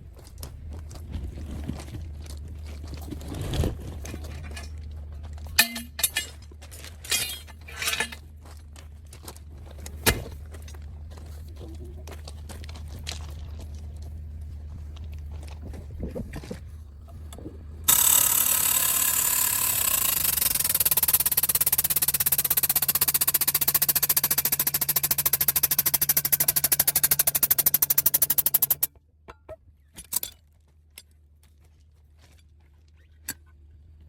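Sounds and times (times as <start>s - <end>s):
steady low hum: 0.0s - 29.5s
air impact wrench hammering: 5.6s - 6.2s, 17.9s - 28.9s.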